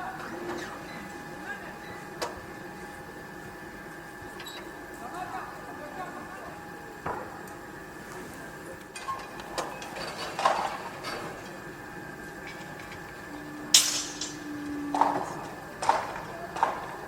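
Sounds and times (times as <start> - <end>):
steady hum: 0.0 - 17.0
metallic clanks and knocks: 13.7 - 16.8.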